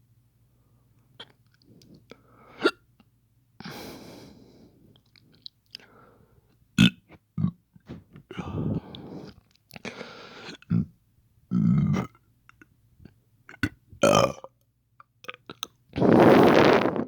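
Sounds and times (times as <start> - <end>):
low burp: 11.5 - 12.1, 14.0 - 14.5.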